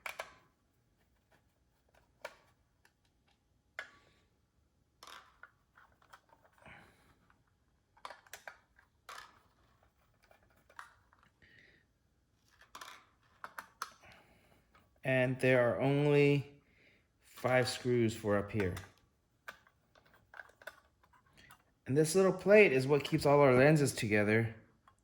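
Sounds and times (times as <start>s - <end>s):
screws being handled: 12.4s - 15.0s, 19.5s - 21.7s.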